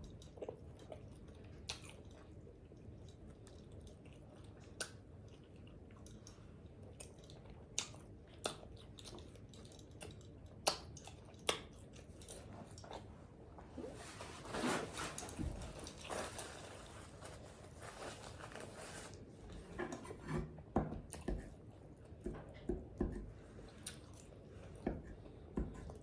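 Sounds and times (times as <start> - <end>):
person chewing and lip smacking: 0.0 - 13.2, 21.0 - 26.0.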